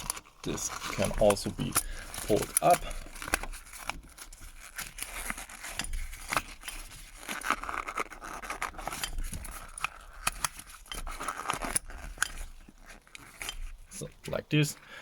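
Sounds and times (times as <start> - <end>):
rubber boot scraping and rubbing: 0.0 - 14.4.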